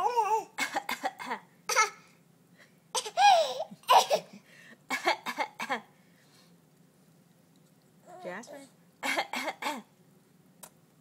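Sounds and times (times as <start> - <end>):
baby laughing and squealing: 3.0 - 4.3.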